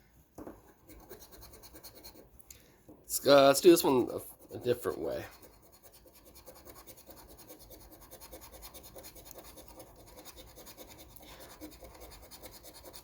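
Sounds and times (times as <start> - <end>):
scratching lottery ticket coating: 3.5 - 13.0.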